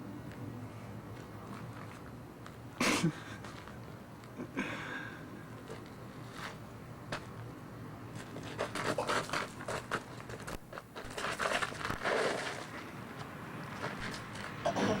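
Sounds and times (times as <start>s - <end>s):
rustles: 5.4s - 7.5s, 8.1s - 14.7s
scratching and scraping: 8.2s - 14.6s.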